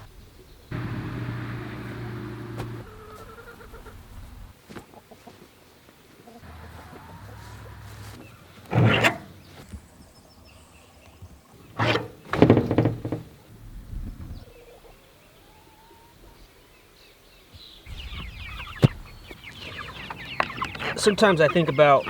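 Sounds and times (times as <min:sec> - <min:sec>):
chickens clucking: 0:00.7 - 0:05.5, 0:06.2 - 0:09.2, 0:14.1 - 0:16.5, 0:17.9 - 0:22.0
loud thunks: 0:02.4 - 0:02.8, 0:08.7 - 0:09.4, 0:11.8 - 0:13.4.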